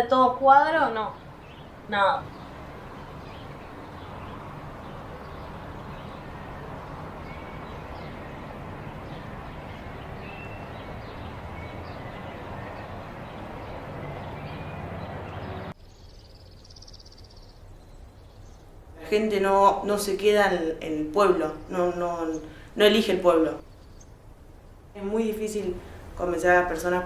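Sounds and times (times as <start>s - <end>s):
bird chirps: 1.1s - 18.8s.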